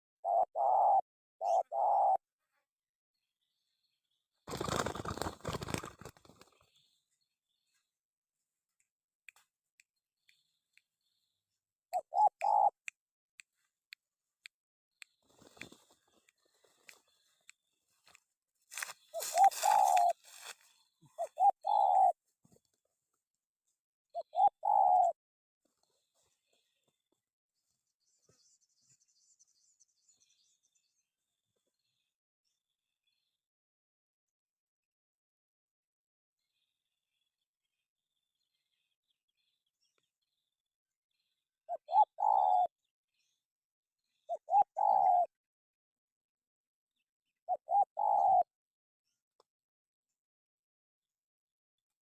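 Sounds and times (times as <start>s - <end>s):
dove cooing: 0.2s - 2.2s, 12.0s - 12.8s, 19.1s - 20.4s, 21.0s - 22.2s, 24.2s - 25.2s, 41.7s - 42.7s, 44.3s - 45.3s, 47.5s - 48.5s.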